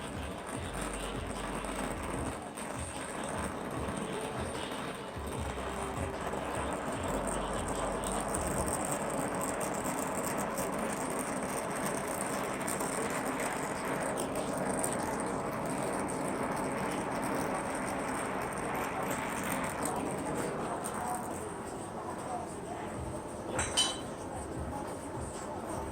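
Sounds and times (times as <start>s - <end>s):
gas torch hissing roar: 0.0s - 22.7s.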